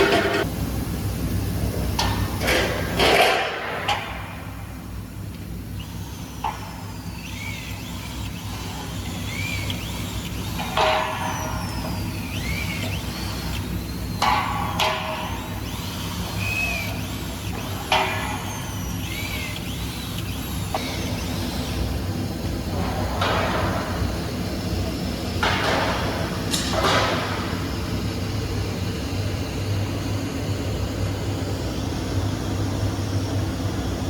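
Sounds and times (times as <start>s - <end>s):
metallic clanks and knocks: 0.0s - 0.5s
industrial machinery hum: 0.0s - 34.0s.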